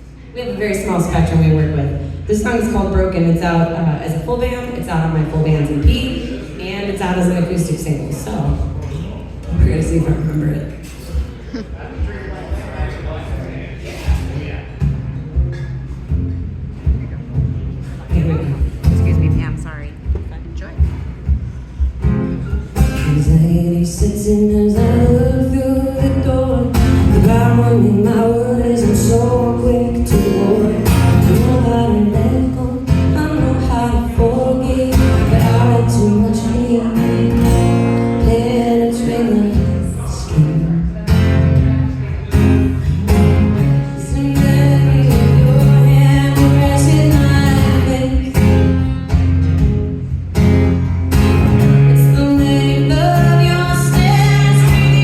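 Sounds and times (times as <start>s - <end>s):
acoustic guitar strumming: 12.8s - 55.0s
woman singing: 22.8s - 41.0s, 43.1s - 48.9s, 51.8s - 55.0s.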